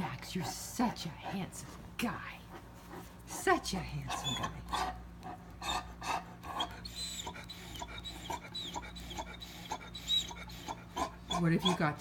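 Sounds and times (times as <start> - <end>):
dog panting: 0.0 - 12.0
dog whimpering: 3.8 - 5.0, 5.6 - 12.0.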